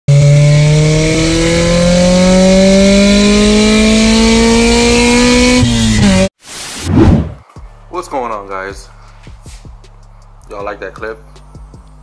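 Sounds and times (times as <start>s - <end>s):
car engine accelerating hard: 0.1s - 6.3s.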